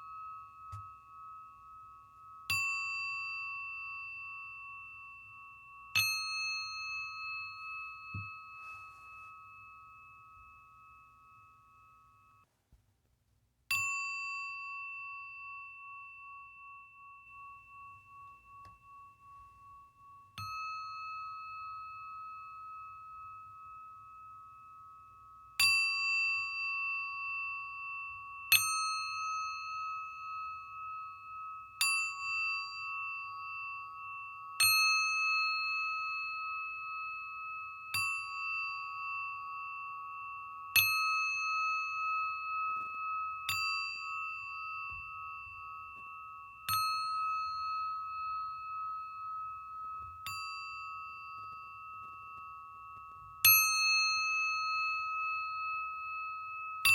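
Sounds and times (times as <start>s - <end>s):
singing bowl struck with mallet: 0.0s - 4.5s, 5.9s - 8.8s.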